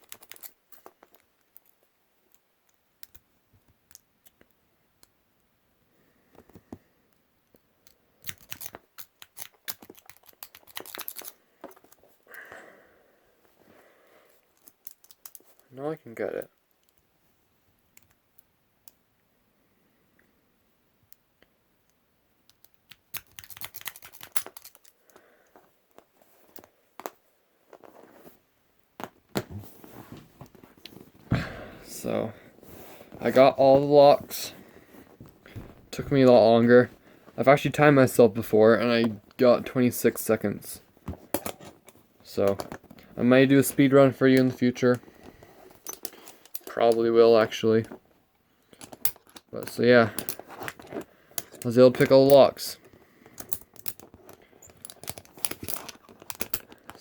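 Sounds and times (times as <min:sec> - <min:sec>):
padlocks and tools clicking: 0:08.2 - 0:12.0, 0:22.5 - 0:25.1, 0:45.8 - 0:47.0, 0:48.7 - 0:51.7, 0:53.3 - 0:57.0.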